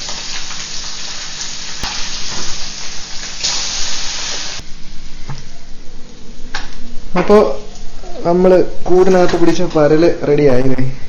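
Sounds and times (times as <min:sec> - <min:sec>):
fish sizzling in hot oil: 0:00.0 - 0:04.6.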